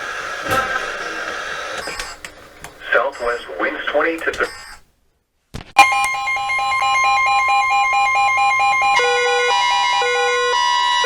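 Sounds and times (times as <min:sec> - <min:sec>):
fast pulsing beeps: 0:05.8 - 0:10.5
steady high alert tone: 0:05.8 - 0:11.0.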